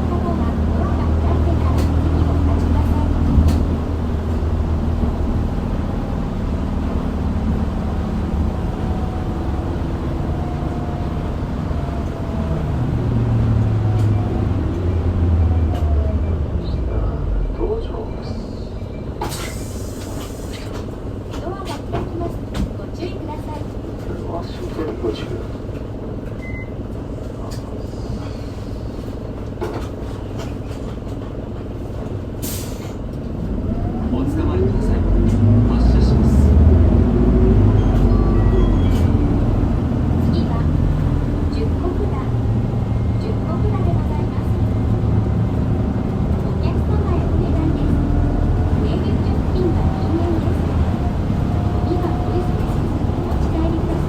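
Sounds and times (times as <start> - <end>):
bus diesel engine drone: 0.0 - 54.0
air brake hiss: 19.3 - 20.7, 32.4 - 33.0.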